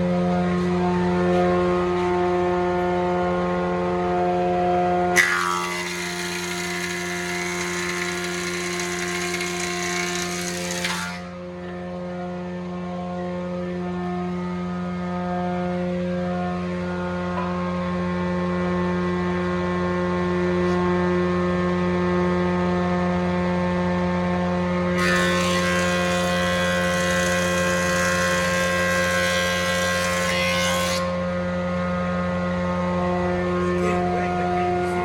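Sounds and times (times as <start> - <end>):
cutter block cutting board: 5.2 - 11.2, 25.0 - 31.1
planer motor humming: 5.2 - 11.3, 25.0 - 30.4, 33.0 - 35.0.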